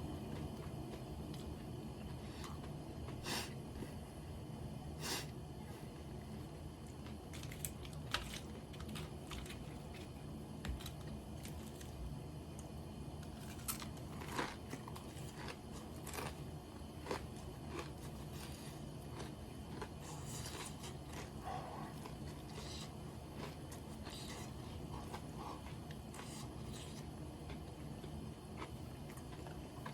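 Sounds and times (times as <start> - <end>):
steady low hum: 0.0 - 29.9
chewing crisp fried chicken: 13.2 - 29.9.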